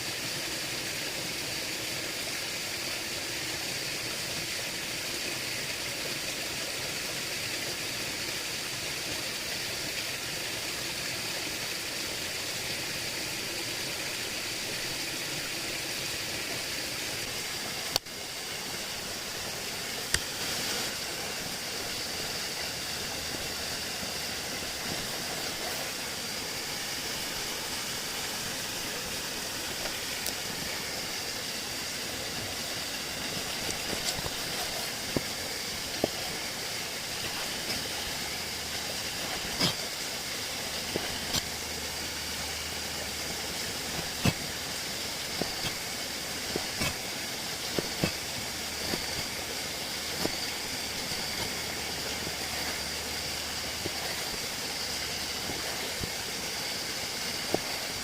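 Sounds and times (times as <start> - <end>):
oil popping and crackling: 20.0 - 22.1, 28.9 - 58.0
food sizzling in oil: 28.6 - 58.0.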